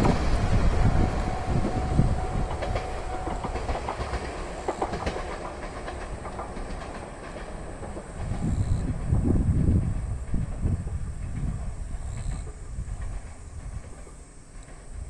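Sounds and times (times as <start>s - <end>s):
low train rumble: 0.0s - 15.0s
train wheels clacking over rail joints: 0.0s - 15.0s.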